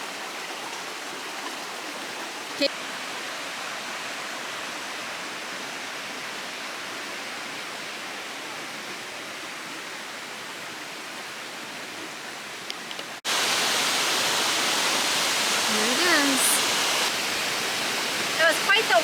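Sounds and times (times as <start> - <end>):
river water rushing: 13.3 - 19.0.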